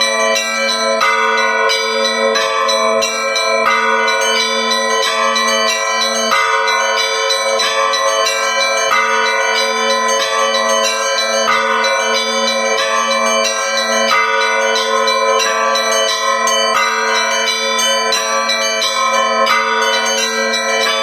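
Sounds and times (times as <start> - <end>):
large deep bell ringing: 0.0 - 21.0
small bells struck rapidly: 0.0 - 21.0.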